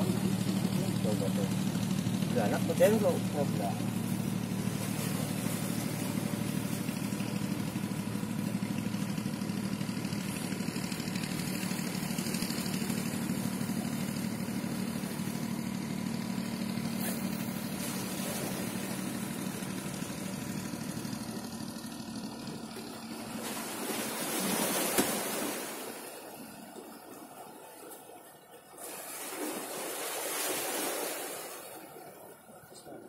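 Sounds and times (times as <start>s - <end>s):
boat engine humming: 0.0s - 33.0s
wind and water hiss: 23.2s - 28.0s, 28.7s - 33.0s.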